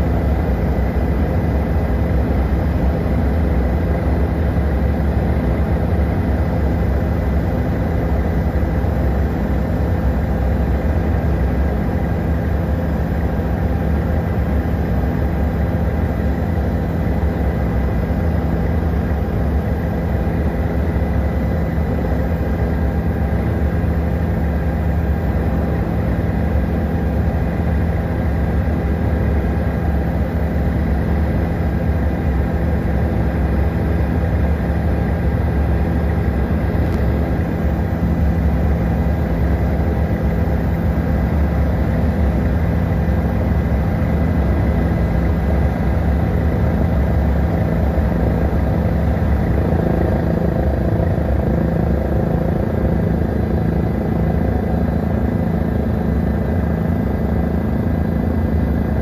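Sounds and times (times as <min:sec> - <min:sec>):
helicopter rotor and turbine drone: 0:00.0 - 0:59.0.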